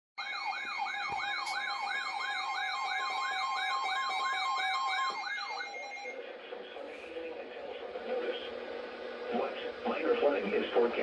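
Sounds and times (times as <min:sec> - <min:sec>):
siren-like alert tone: 0:00.2 - 0:06.2.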